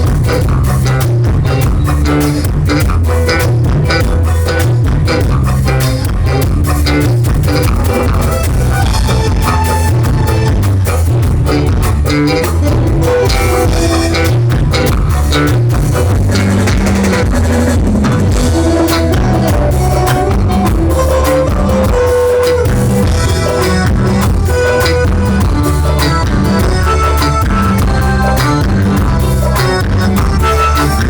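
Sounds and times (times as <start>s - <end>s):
live band playing: 0.0s - 31.0s.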